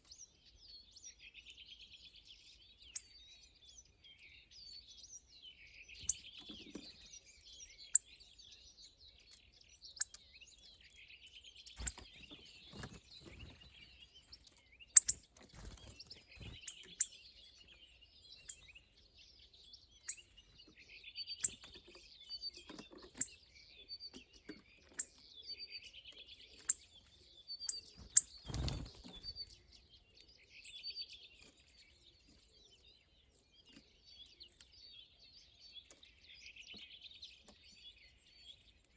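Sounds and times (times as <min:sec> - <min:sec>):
small birds twittering: 0:00.0 - 0:38.9
sharp bird chirps: 0:05.6 - 0:31.7.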